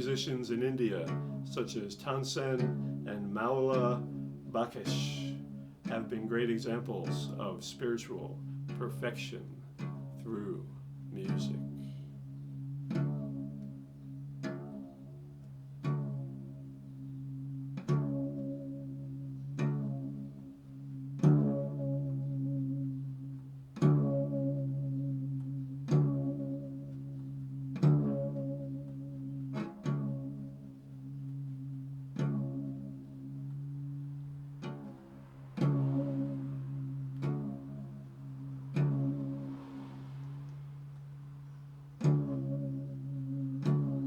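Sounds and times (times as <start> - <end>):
low drone: 30.8 - 44.0.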